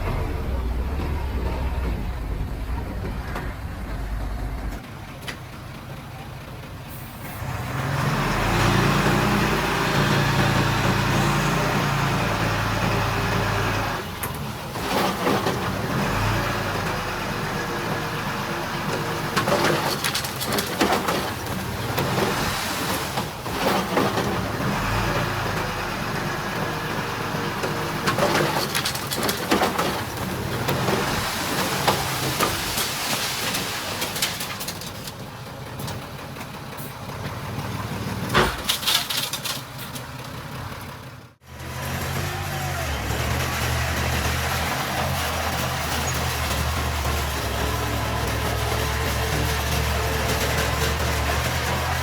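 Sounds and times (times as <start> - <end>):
earthmoving machine diesel engines: 0.0 - 52.0
metallic clanks and rattles: 28.1 - 31.0, 38.2 - 40.5.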